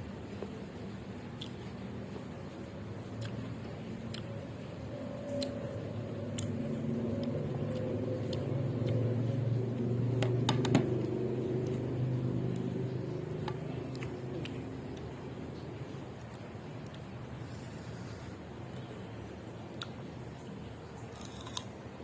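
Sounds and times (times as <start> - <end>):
vehicle engine passing: 5.7 - 16.0.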